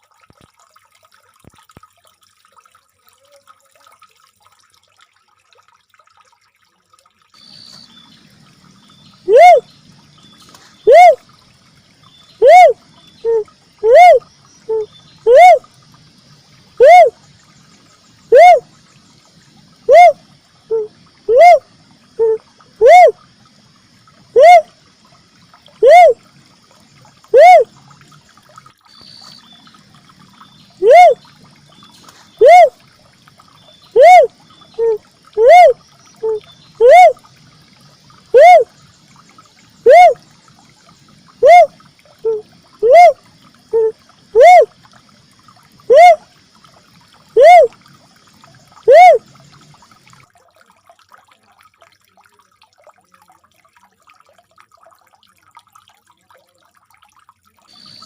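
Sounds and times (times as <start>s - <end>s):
dove hooting call: 9.3s - 9.7s, 10.8s - 11.2s, 12.4s - 15.7s, 16.8s - 17.2s, 18.3s - 18.6s, 19.9s - 21.6s, 22.2s - 23.2s, 24.3s - 24.7s, 25.8s - 26.2s, 27.3s - 27.7s, 30.8s - 31.2s, 32.4s - 32.7s, 33.9s - 37.2s, 38.3s - 38.7s, 39.8s - 40.2s, 41.4s - 44.7s, 45.9s - 46.2s, 47.4s - 47.8s, 48.8s - 49.2s.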